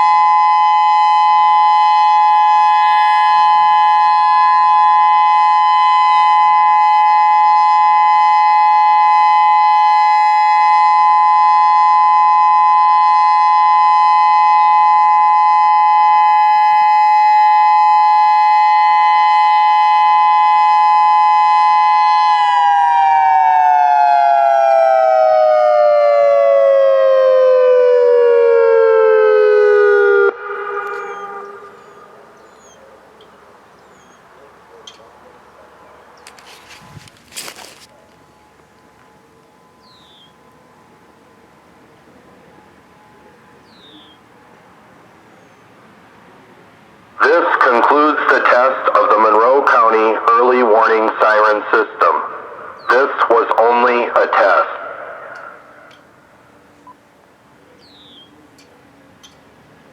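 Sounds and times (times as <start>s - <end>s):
warning siren two-note tone: 0.0s - 34.2s.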